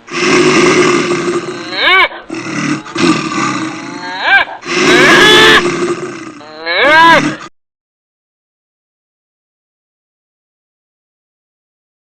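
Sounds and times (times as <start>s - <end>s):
wild animals calling: 0.1s - 7.5s.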